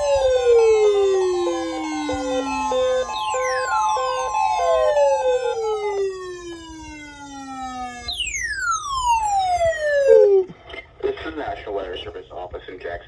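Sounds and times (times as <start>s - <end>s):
fast two-pitch beeping: 0.0s - 10.4s
electronic downward sweeps: 0.0s - 10.5s
steady warning alarm tone: 0.0s - 10.5s.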